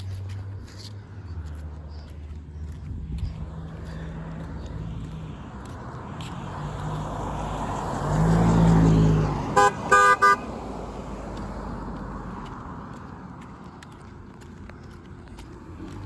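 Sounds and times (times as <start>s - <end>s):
car driving past: 3.4s - 13.4s
car horn toots: 9.6s - 10.5s.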